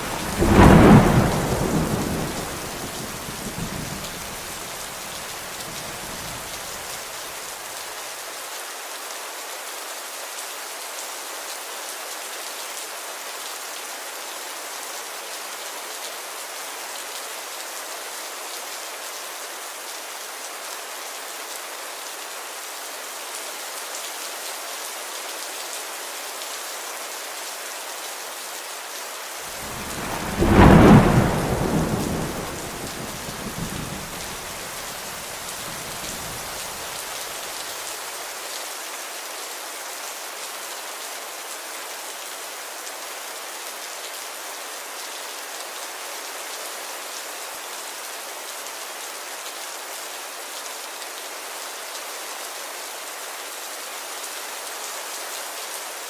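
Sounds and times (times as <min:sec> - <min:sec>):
thunder rumbling: 0:00.0 - 0:04.7, 0:29.5 - 0:36.9
rain hissing: 0:00.0 - 0:07.8, 0:29.4 - 0:38.1.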